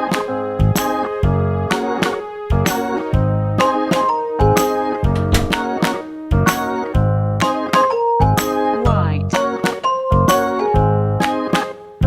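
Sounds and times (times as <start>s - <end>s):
upbeat electric piano music: 3.6s - 11.6s.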